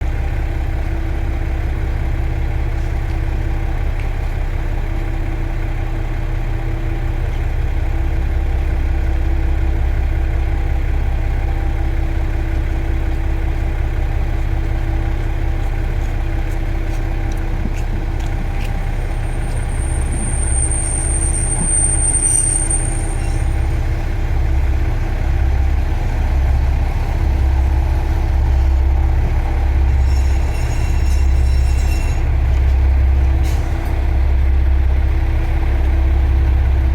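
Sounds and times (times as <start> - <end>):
diesel railcar engine drone: 0.0 - 36.9
high thin squeal: 18.9 - 24.0, 29.7 - 32.4.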